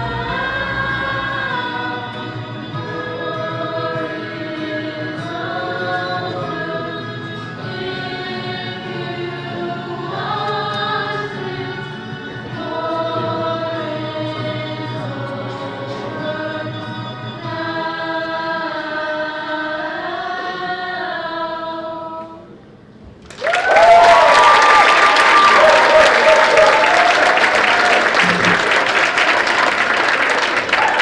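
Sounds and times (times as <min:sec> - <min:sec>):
choir singing held notes: 0:00.0 - 0:22.6, 0:24.0 - 0:31.0
loud applause: 0:23.2 - 0:31.0.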